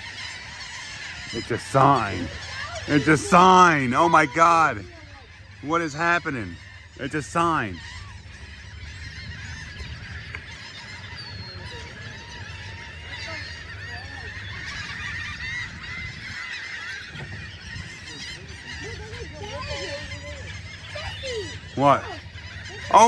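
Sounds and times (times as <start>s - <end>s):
gulls squawking: 0.0s - 23.0s
steady low rumble: 1.4s - 16.4s.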